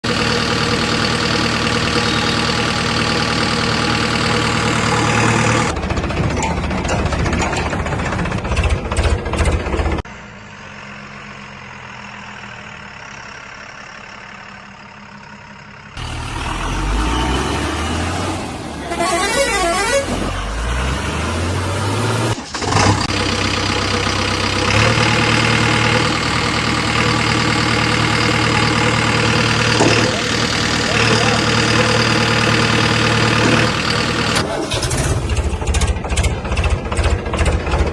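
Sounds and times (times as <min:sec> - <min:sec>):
engine knocking: 0:00.0 - 0:10.1, 0:22.6 - 0:37.9
heavy diesel engines running: 0:00.0 - 0:37.9
engine revving up: 0:04.2 - 0:05.8, 0:16.0 - 0:37.9.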